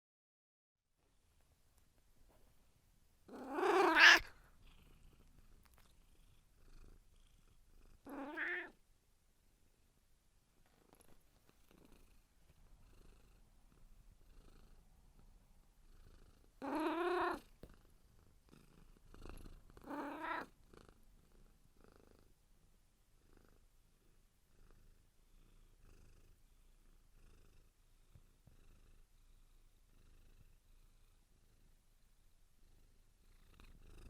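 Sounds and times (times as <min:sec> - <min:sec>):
cat purring: 0:01.4 - 0:08.9, 0:10.6 - 0:34.0
cat meowing loudly: 0:03.4 - 0:04.3, 0:08.1 - 0:08.8.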